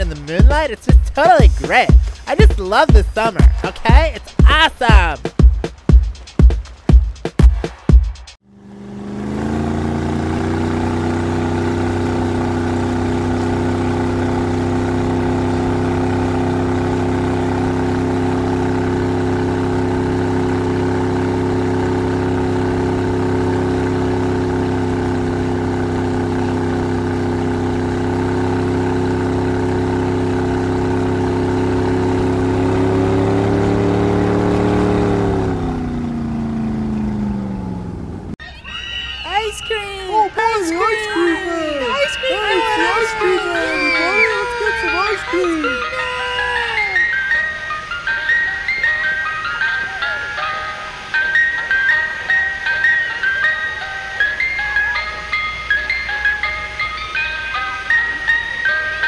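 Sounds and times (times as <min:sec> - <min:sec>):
small engine running: 0:08.4 - 0:38.4, 0:40.4 - 0:47.2.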